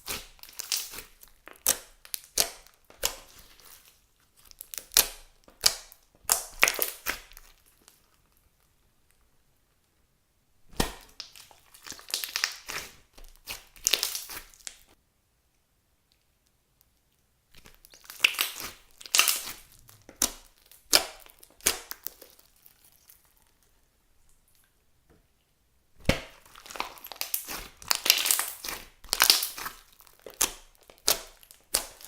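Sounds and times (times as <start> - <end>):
crunchy slime squeezed by hand: 10.7 - 14.9, 17.5 - 23.6, 26.0 - 32.0.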